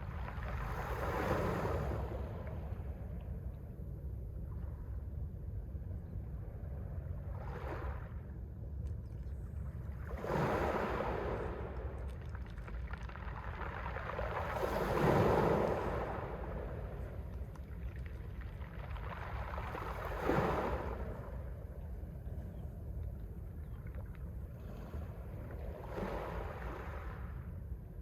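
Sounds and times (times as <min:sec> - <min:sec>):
waves breaking on shore: 0:00.0 - 0:02.4, 0:10.0 - 0:21.8, 0:24.7 - 0:27.5
steady low rumble: 0:00.0 - 0:28.0.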